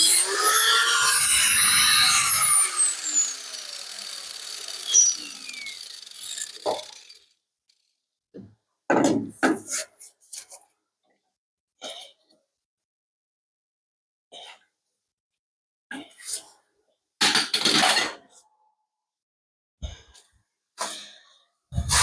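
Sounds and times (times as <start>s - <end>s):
power tool motor whining: 0.0s - 7.9s.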